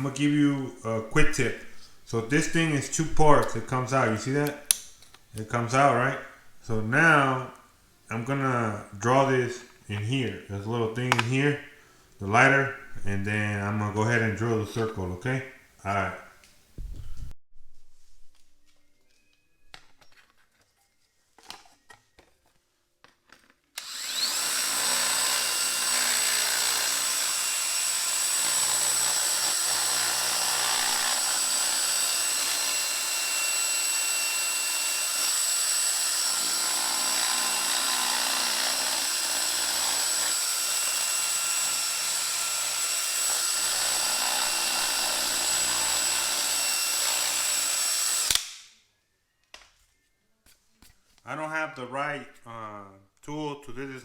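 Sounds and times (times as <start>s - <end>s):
power grinder whining: 23.8s - 48.5s.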